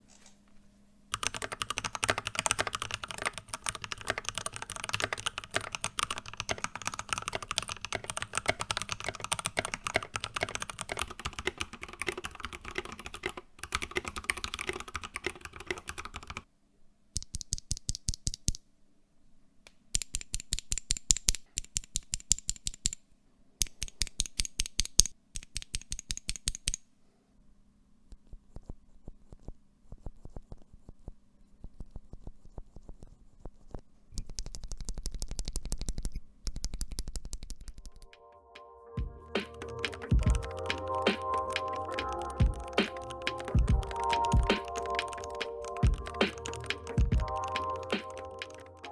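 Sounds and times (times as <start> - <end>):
mechanical keyboard typing: 1.1 - 16.5, 17.2 - 18.6, 20.0 - 23.0, 23.6 - 26.8, 34.2 - 38.2, 39.4 - 48.9
rapid keystrokes: 1.1 - 16.5, 17.2 - 18.6, 20.0 - 23.0, 23.6 - 26.8, 32.8 - 38.2, 39.4 - 48.9.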